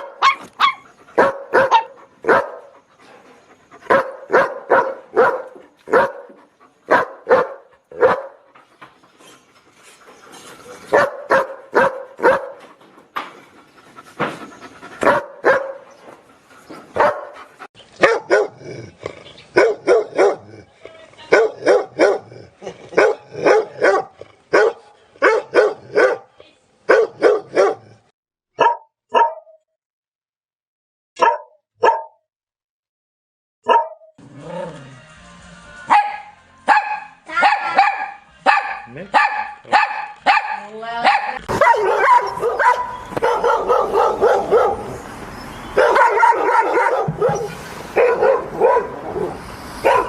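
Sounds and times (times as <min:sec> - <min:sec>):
dogs barking: 0:00.0 - 0:02.9, 0:03.6 - 0:08.7, 0:10.9 - 0:12.8, 0:15.0 - 0:16.0, 0:16.9 - 0:26.3, 0:26.9 - 0:28.0, 0:28.6 - 0:29.6, 0:31.2 - 0:32.2, 0:33.6 - 0:34.1, 0:35.9 - 0:50.0.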